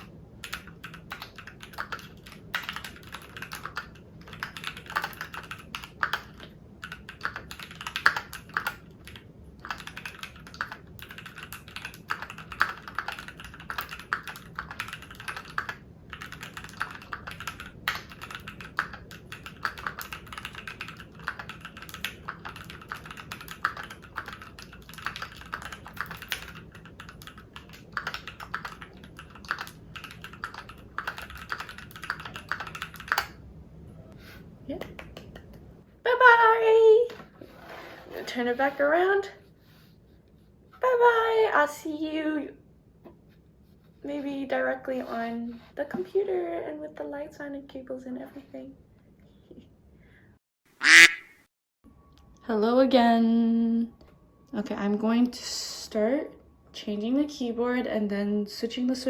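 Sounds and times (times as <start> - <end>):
mechanical keyboard typing: 0.0 - 33.4.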